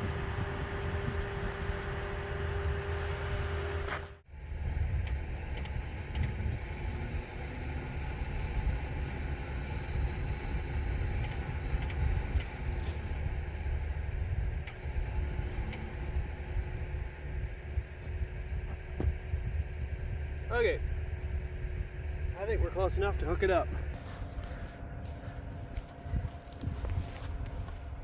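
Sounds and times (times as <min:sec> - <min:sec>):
vehicle engine rumbling: 0:00.0 - 0:28.0.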